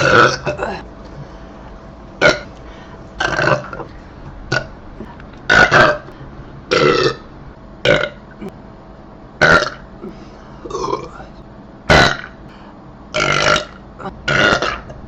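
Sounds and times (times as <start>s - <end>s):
person belching: 0.0s - 0.8s, 2.2s - 2.5s, 3.2s - 3.9s, 4.5s - 4.7s, 5.5s - 6.1s, 6.7s - 8.6s, 9.4s - 11.2s, 11.9s - 12.4s, 13.1s - 15.0s.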